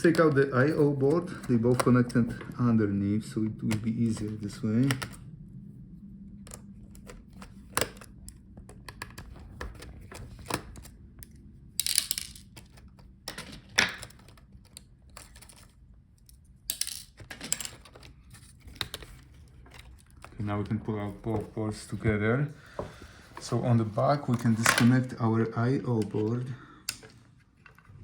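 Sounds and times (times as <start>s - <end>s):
small parts clicking and clattering: 11.8s - 20.4s.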